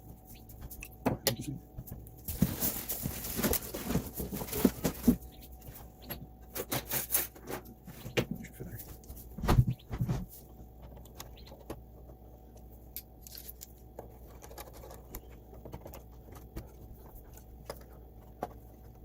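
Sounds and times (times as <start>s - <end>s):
screwdriver clicking and scratching: 13.0s - 18.5s.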